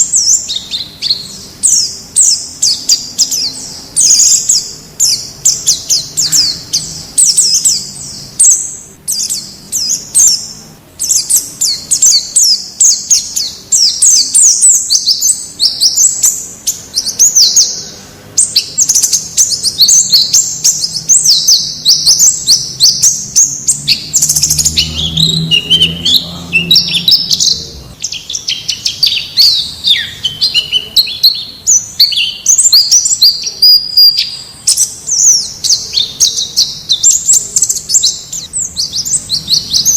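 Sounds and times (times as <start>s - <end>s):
birds twittering: 0.0s - 39.9s.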